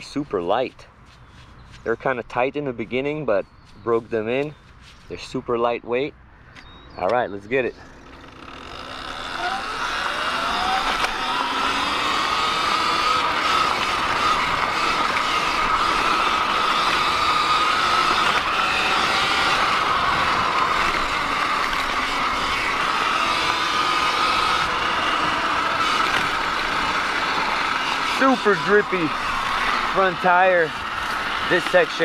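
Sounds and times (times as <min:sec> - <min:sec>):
wind and tyre noise: 0:00.0 - 0:32.0
electric motor whine: 0:07.8 - 0:32.0.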